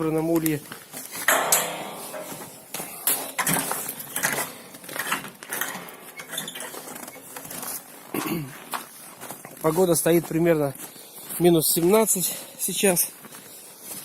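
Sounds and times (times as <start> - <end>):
hard objects clinking and knocking: 1.3 - 7.8.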